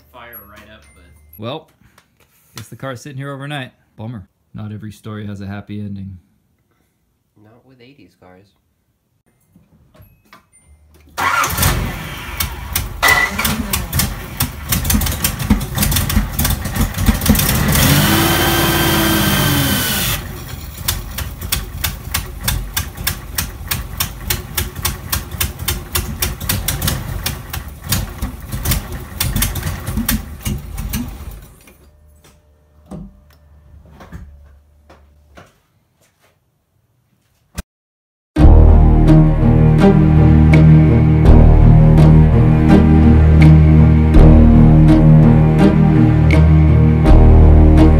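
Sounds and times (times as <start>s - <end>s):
car engine running roughly: 11.2s - 31.4s.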